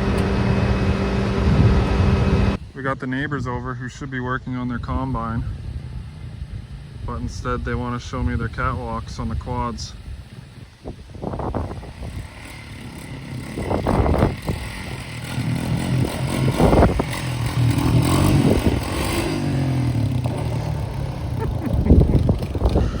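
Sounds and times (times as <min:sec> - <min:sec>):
quad engine revving: 0:00.0 - 0:02.6, 0:11.3 - 0:23.0.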